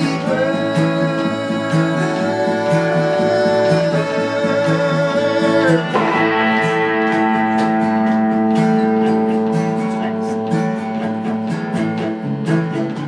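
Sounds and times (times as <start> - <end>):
strummed guitar: 0.0 - 13.0.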